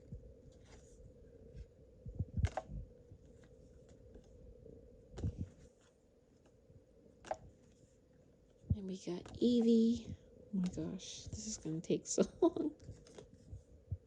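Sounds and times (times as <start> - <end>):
faint steady hum: 0.0 - 14.0
trading cards rustling and clicking: 2.4 - 4.4, 12.8 - 13.6.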